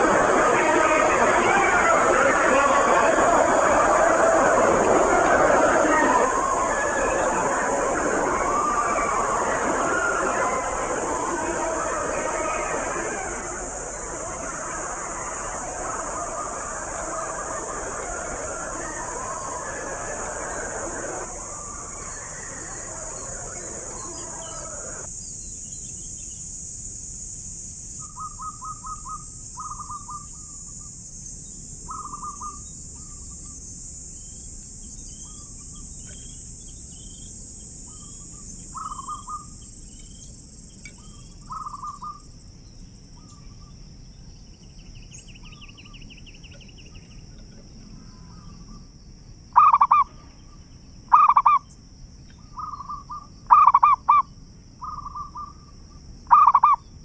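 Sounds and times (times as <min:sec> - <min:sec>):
doves cooing: 0:00.0 - 0:25.1
steady high-pitched hiss: 0:00.0 - 0:57.0.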